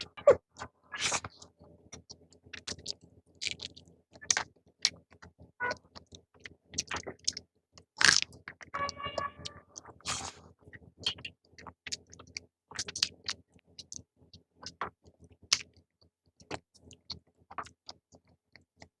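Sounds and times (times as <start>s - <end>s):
person chewing: 2.6s - 4.4s.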